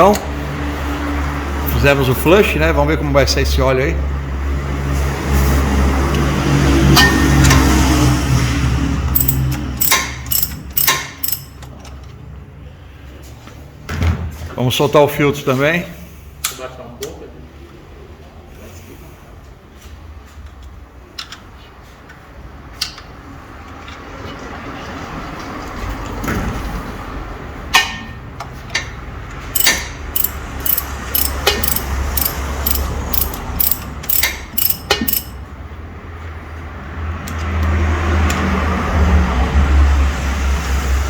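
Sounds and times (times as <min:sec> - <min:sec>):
ratchet wrench clicking: 0:09.2 - 0:11.6, 0:29.6 - 0:35.4.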